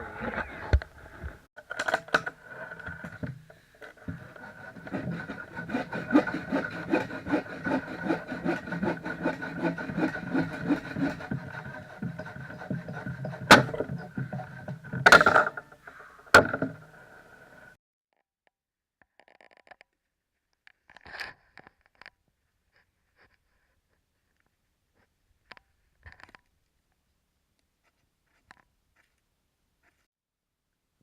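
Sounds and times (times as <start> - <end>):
hand saw cutting wood: 2.4 - 15.6.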